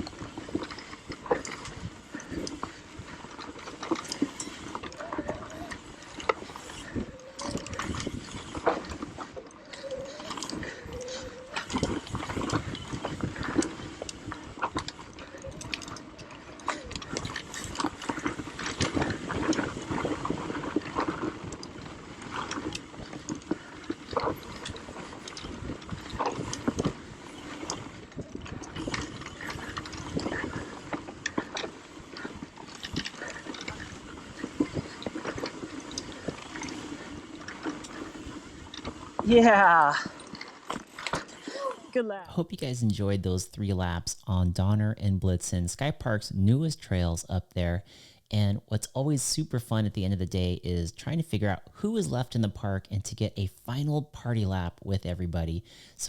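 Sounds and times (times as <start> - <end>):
bike rattling over bumps: 0.0 - 42.0
bike tyres on dirt: 0.0 - 42.1.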